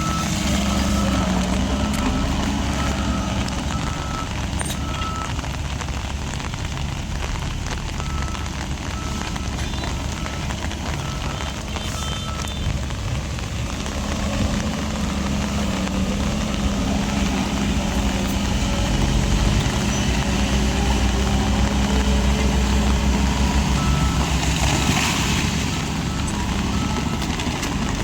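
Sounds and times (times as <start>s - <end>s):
back-up alarm beeps: 0.0s - 5.3s, 8.0s - 12.6s, 23.6s - 24.3s
heavy diesel engine running: 0.0s - 28.0s.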